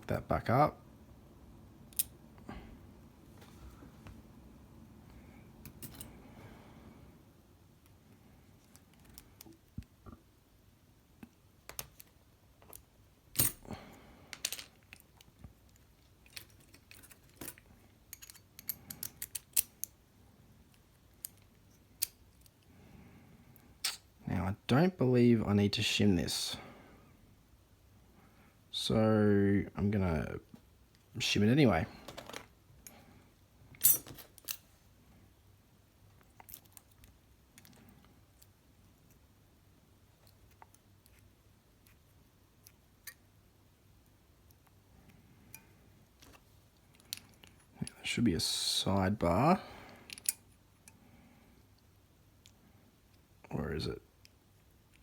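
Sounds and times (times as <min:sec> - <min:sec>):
metal lock parts rattling: 0:16.2 - 0:19.8, 0:33.8 - 0:34.6.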